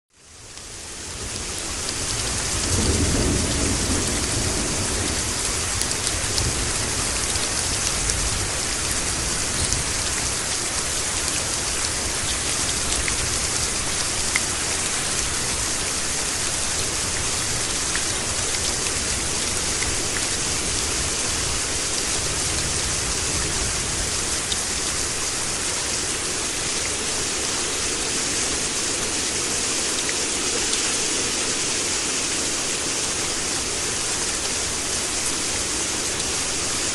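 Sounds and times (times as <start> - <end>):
heavy rain: 0.1 - 36.9
thunder rumble: 2.0 - 10.0.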